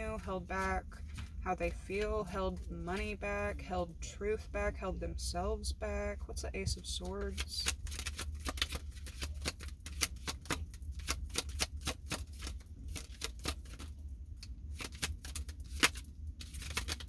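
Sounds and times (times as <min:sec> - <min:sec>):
low hum: 0:00.0 - 0:09.9
cards being shuffled: 0:07.1 - 0:17.0.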